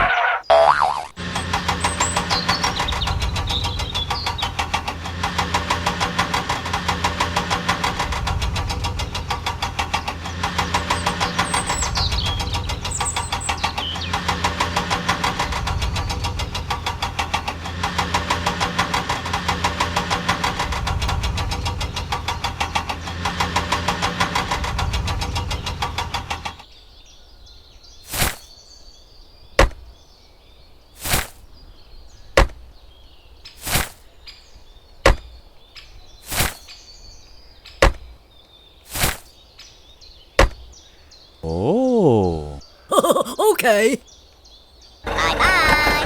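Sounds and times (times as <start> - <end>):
engine with fast knocking pulse: 1.2 - 26.6.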